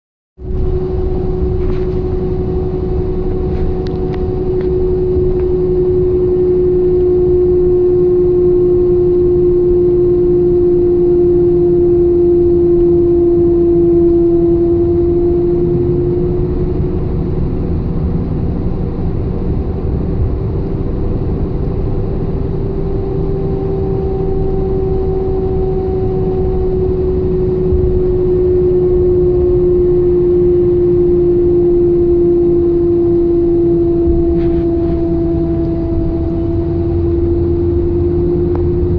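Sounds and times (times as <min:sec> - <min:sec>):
truck engine rumble: 0:00.4 - 0:08.3, 0:14.0 - 0:31.0, 0:32.8 - 0:38.9
pickup truck whining hum: 0:00.4 - 0:38.9.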